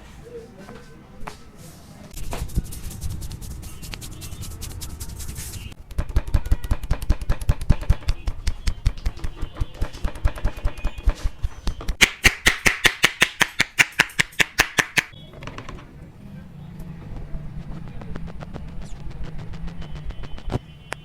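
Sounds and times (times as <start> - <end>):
percussive head massage strikes: 2.2 - 15.2.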